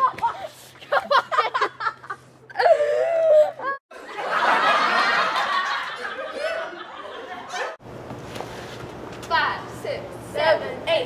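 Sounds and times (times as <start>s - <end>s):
several people laughing: 0.0s - 7.8s.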